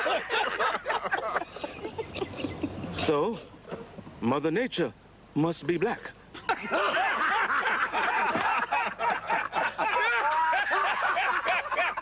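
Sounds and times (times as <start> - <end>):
audience laughing: 0.0 - 3.0, 6.4 - 12.0.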